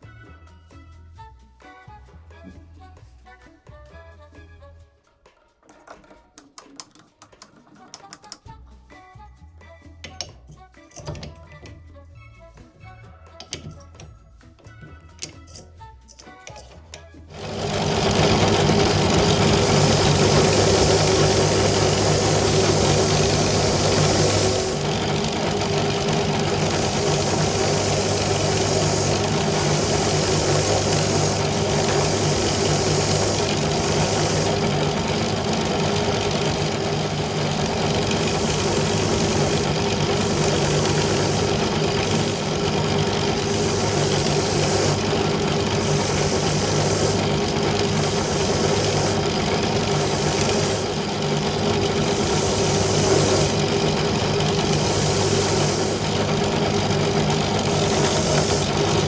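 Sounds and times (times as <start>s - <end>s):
electric motor humming: 17.3s - 59.0s.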